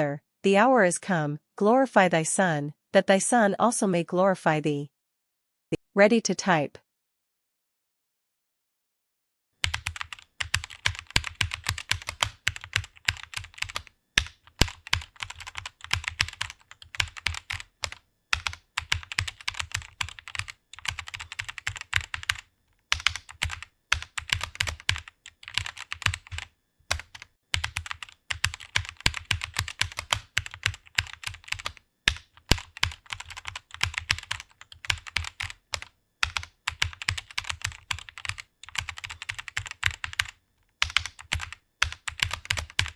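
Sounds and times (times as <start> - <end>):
fast keyboard typing: 9.6 - 42.9.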